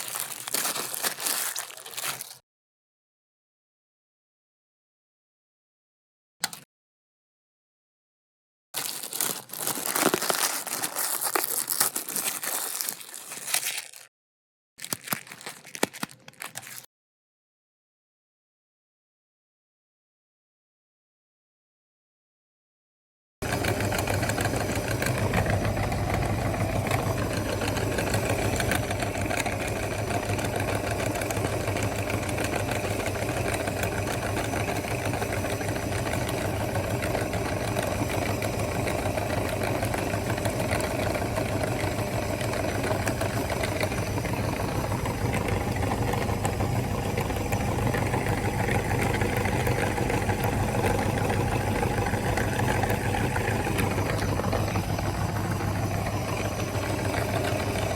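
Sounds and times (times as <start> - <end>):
electric meat grinder running: 0.0 - 2.3, 8.8 - 14.0, 23.4 - 57.9.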